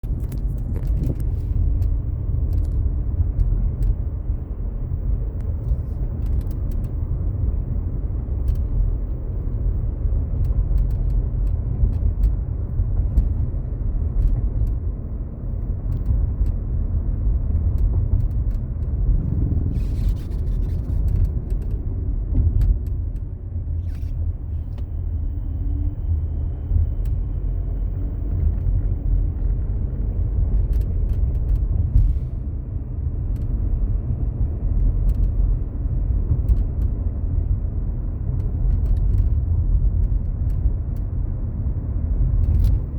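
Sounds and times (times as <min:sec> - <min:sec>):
car cabin rumble: 0:00.0 - 0:42.9
dashboard creaks and clicks: 0:19.6 - 0:23.3.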